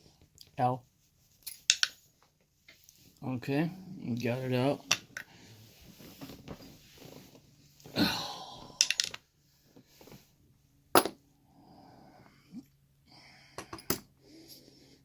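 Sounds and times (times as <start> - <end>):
lock parts clicking: 8.8 - 9.2.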